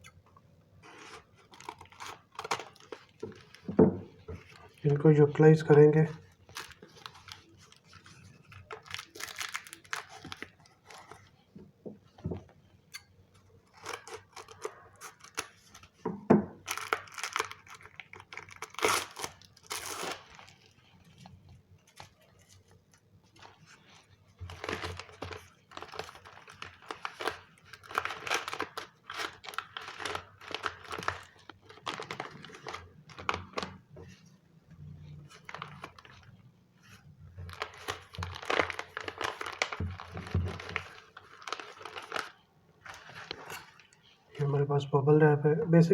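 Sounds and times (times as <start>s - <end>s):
corrugated paper crinkling and tearing: 0.8s - 11.5s, 13.6s - 16.0s, 16.6s - 34.3s, 35.0s - 44.1s.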